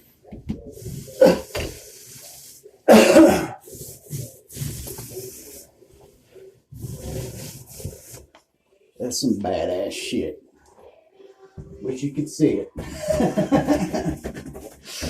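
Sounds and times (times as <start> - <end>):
person coughing: 1.1 - 1.7, 2.9 - 3.6
paint roller rasping on wall: 3.7 - 5.6.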